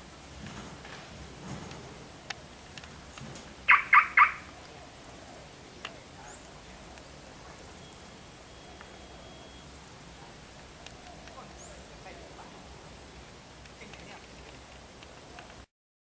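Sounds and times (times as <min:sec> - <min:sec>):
animal calling sharply: 0:03.7 - 0:04.6
faint clicks: 0:10.2 - 0:11.6, 0:13.6 - 0:15.7.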